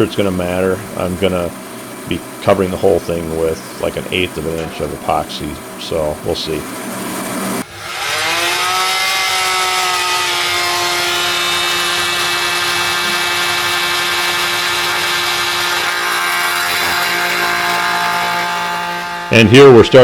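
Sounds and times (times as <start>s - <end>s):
power tool motor whine: 6.7s - 20.0s.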